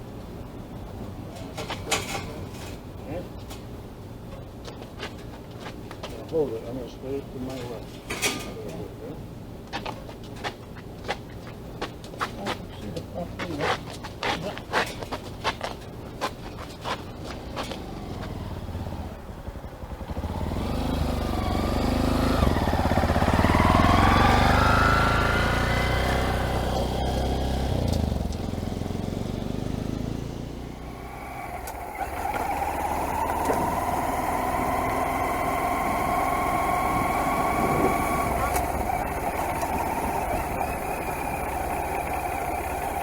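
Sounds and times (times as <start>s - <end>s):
motorcycle engine accelerating: 14.2s - 43.0s.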